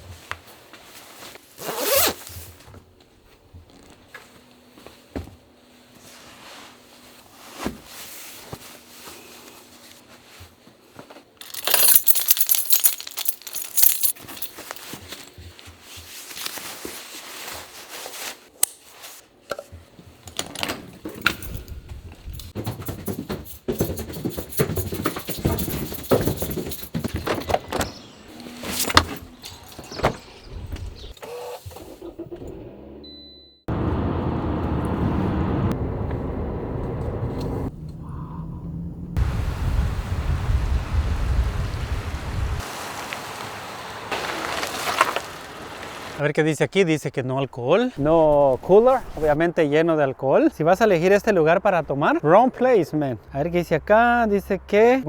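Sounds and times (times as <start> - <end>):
metallic jangling and rustling: 11.4 - 15.6, 20.6 - 31.1
low rumbling handling noise: 24.5 - 31.2, 33.7 - 42.6.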